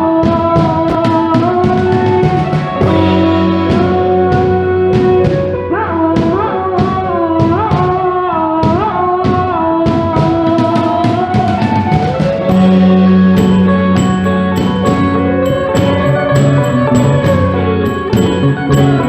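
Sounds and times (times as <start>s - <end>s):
drum beat: 0.3s - 5.6s, 10.0s - 19.0s
held sliding melody: 2.3s - 5.8s, 12.0s - 19.0s.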